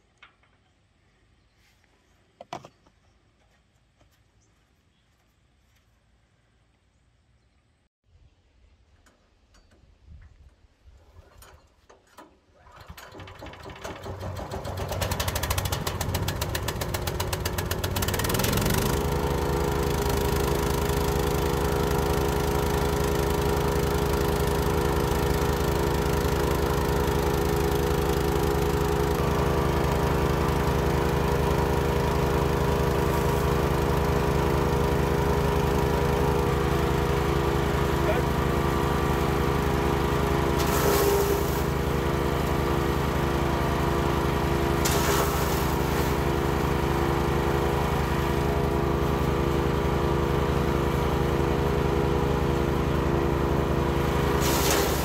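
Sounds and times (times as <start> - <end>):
small petrol engine starting up: 12.1 - 55.0.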